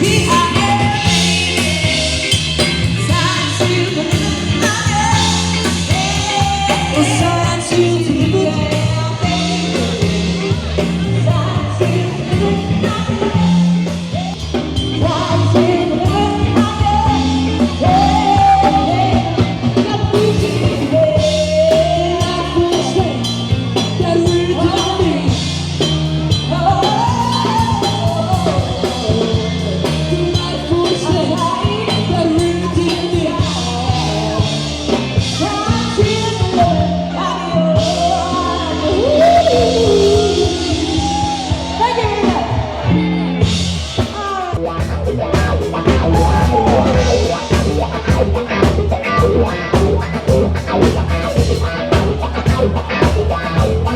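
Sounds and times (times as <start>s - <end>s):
live rock band playing: 0.0s - 53.9s
person singing: 0.0s - 53.9s.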